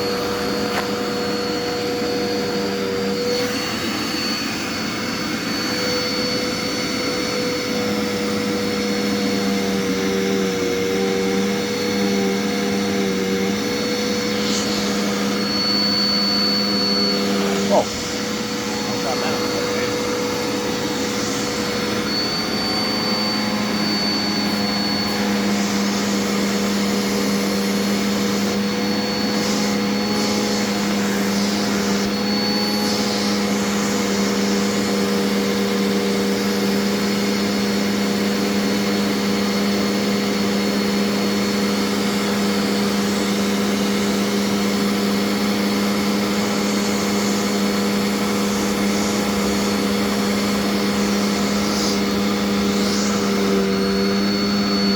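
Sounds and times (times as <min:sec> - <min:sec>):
vacuum cleaner humming: 0:00.0 - 0:54.9
thin high whistle: 0:14.2 - 0:17.8, 0:21.5 - 0:26.0.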